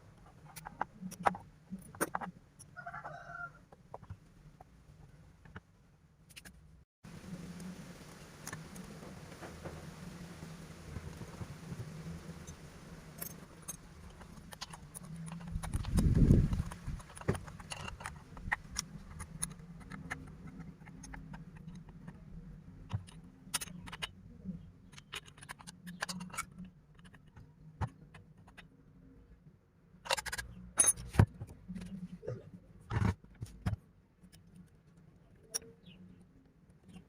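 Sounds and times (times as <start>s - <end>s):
metal tools clinking: 30.1s - 31.2s.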